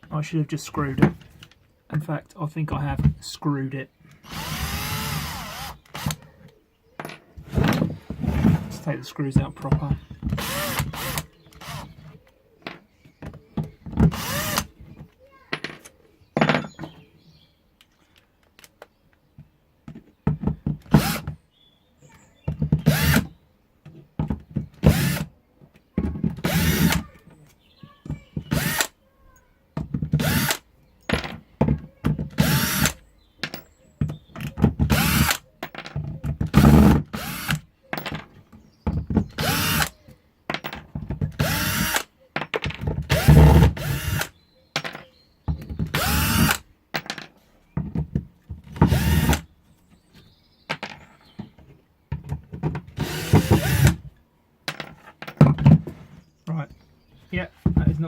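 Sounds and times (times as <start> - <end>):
drill-driver backing out screws: 10.3 - 12.0, 14.1 - 14.7, 26.4 - 27.0, 28.5 - 28.9, 32.4 - 33.0, 34.9 - 35.4, 36.5 - 38.1, 39.4 - 40.0, 41.4 - 42.1, 43.1 - 44.3, 45.9 - 46.6, 48.8 - 49.4, 53.0 - 54.0.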